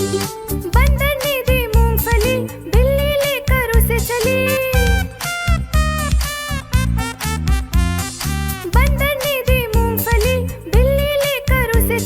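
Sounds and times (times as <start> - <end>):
bouncy instrumental children's music: 0.0 - 12.0.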